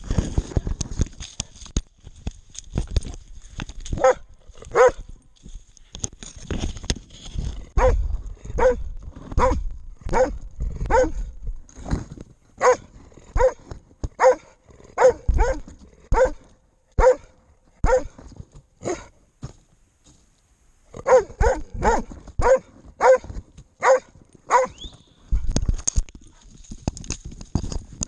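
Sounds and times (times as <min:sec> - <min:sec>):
dog barking: 0:04.0 - 0:05.0, 0:07.8 - 0:08.0, 0:08.6 - 0:08.8, 0:09.4 - 0:11.3, 0:12.6 - 0:13.6, 0:14.2 - 0:16.4, 0:17.0 - 0:18.2, 0:18.8 - 0:19.2, 0:21.0 - 0:24.8.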